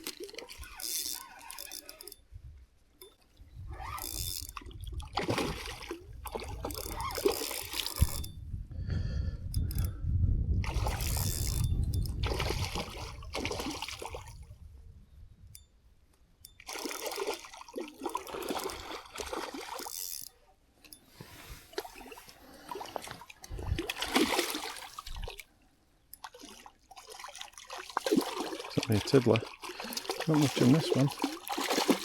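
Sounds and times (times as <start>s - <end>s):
fish splashing in water: 12.2s - 14.4s, 21.7s - 25.5s, 26.2s - 32.0s.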